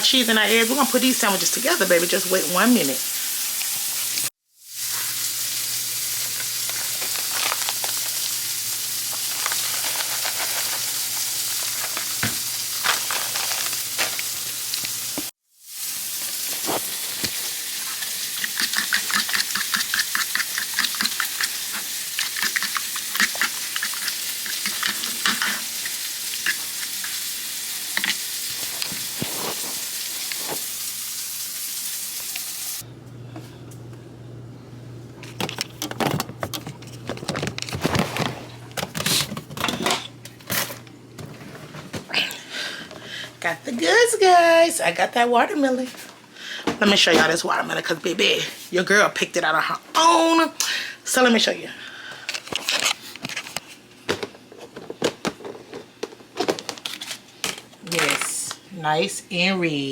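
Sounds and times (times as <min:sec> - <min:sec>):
food sizzling in a frying pan: 0:00.0 - 0:32.8
utensil scraping in a pan: 0:09.0 - 0:12.2, 0:16.4 - 0:27.2, 0:28.0 - 0:30.8.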